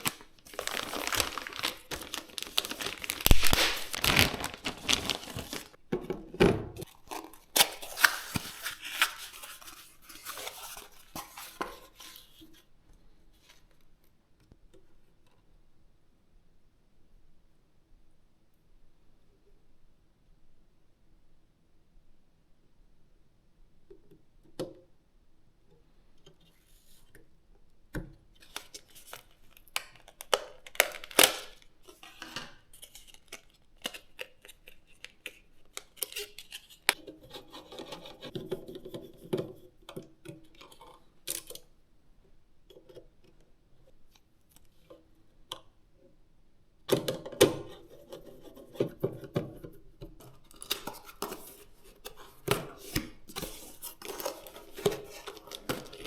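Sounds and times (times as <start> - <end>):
packaging rustling: 0.0 - 5.8, 6.9 - 12.3, 28.4 - 37.0, 50.5 - 56.0.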